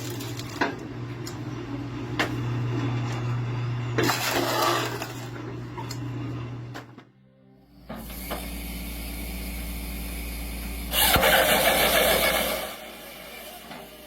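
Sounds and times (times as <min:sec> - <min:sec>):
machine engine humming: 0:00.0 - 0:14.0
loud harsh machine noise: 0:07.6 - 0:14.0.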